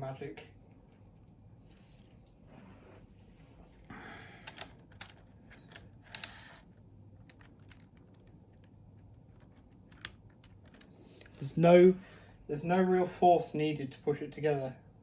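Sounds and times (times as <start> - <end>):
model train cars clicking together: 4.4 - 11.4.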